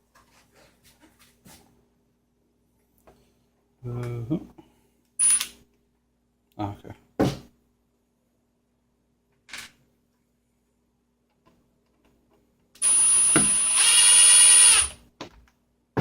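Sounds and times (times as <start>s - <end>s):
small electric motor whining: 12.8s - 15.0s.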